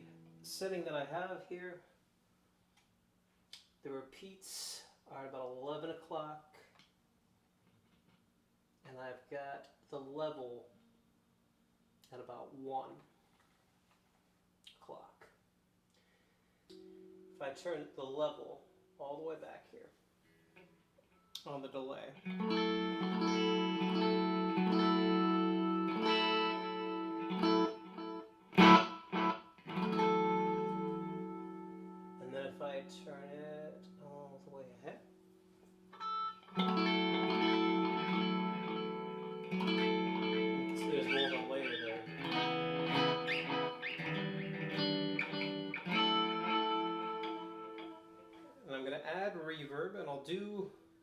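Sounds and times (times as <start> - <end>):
clean electric guitar chords: 22.1 - 48.7.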